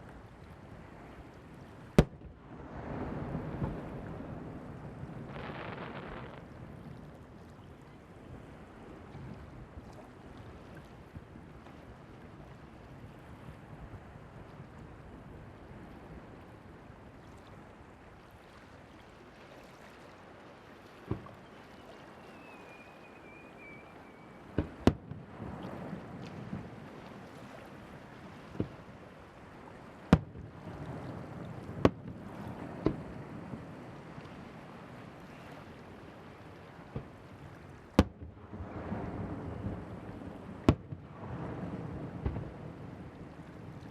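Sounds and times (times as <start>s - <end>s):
hiss of wind or surf: 0.0s - 7.4s, 8.1s - 43.9s
fireworks bangs with crackle: 5.2s - 6.5s, 24.5s - 25.6s, 40.6s - 41.1s, 42.1s - 42.6s
firework whistle: 22.2s - 24.9s.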